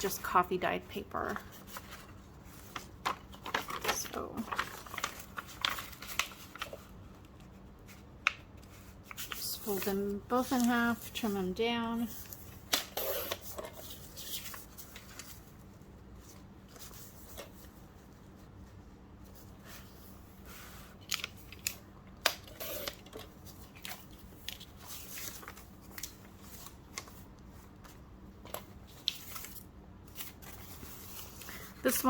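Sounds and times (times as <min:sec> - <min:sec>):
paper rustling and folding: 0:00.0 - 0:32.0.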